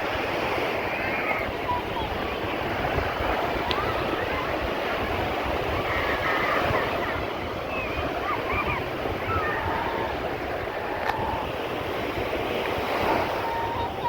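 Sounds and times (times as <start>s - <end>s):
sea surf washing: 0.0s - 14.0s
wind buffeting microphone: 0.0s - 14.0s.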